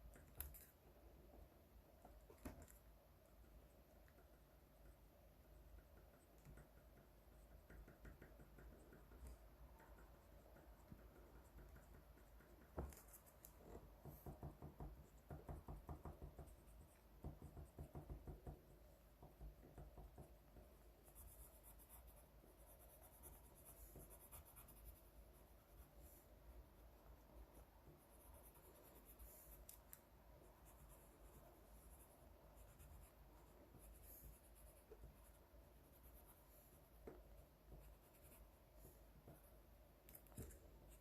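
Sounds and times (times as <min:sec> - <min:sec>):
drawing tool scratching on paper: 0:21.0 - 0:29.8.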